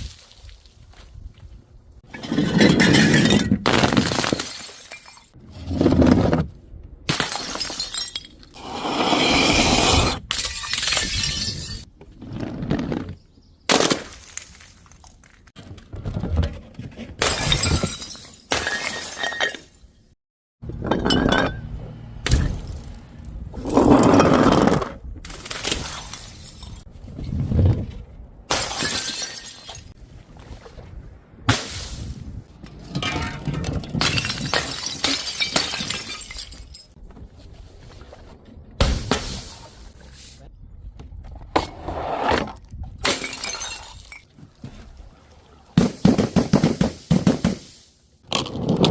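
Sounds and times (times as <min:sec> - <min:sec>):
glass bottles shattering: 0:02.1 - 0:05.4, 0:07.1 - 0:08.6, 0:10.2 - 0:11.9, 0:17.2 - 0:20.1, 0:20.8 - 0:21.7, 0:25.5 - 0:26.9, 0:28.5 - 0:30.0, 0:33.0 - 0:37.0, 0:43.0 - 0:44.3.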